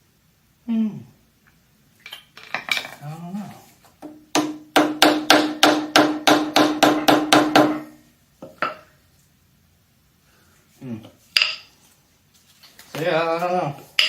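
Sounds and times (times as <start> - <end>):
hammer striking metal: 4.1 - 8.0.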